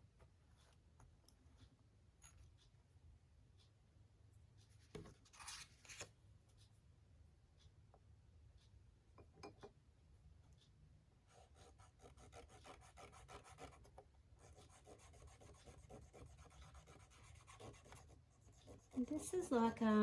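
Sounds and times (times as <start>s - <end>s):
pen scratching on paper: 11.3s - 19.5s.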